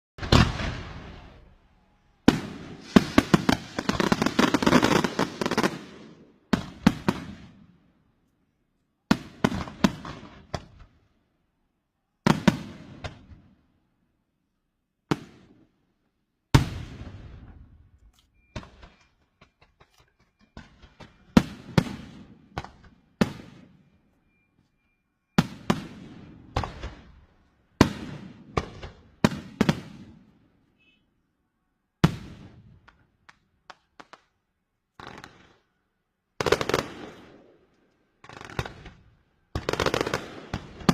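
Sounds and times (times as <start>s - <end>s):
fireworks bangs and crackling: 0.2s - 1.6s, 2.2s - 7.8s, 9.1s - 11.0s, 12.2s - 13.6s, 15.1s - 15.7s, 16.5s - 17.8s, 18.5s - 23.9s, 25.4s - 30.3s, 32.0s - 34.3s, 35.0s - 35.7s, 36.4s - 40.9s.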